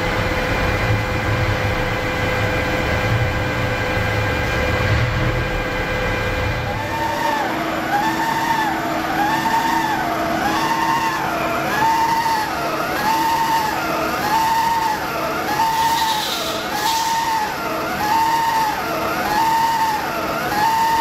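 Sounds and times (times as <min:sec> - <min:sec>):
machine hum: 0:00.0 - 0:21.0
lathe tool squeal: 0:06.6 - 0:21.0
metal cutting hiss: 0:15.6 - 0:17.5.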